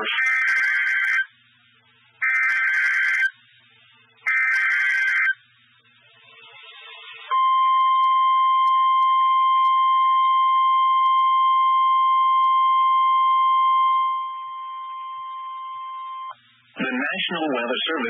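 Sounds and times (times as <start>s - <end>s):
steady electronic alarm tone: 0.0s - 1.3s, 2.2s - 3.4s, 4.2s - 5.4s, 6.2s - 16.4s.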